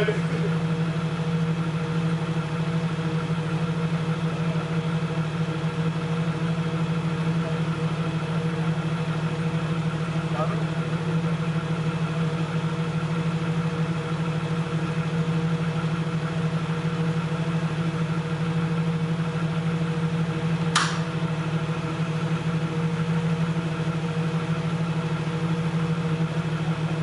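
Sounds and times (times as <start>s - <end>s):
engine running at low revs: 0.0s - 27.0s
sharp click: 20.7s - 21.1s.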